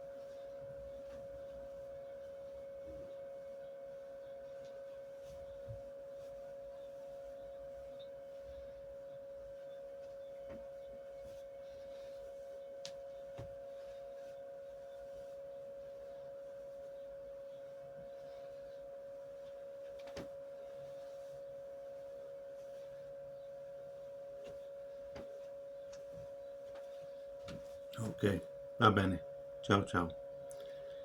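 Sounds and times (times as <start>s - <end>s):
steady high hum-like tone: 0.0s - 31.0s.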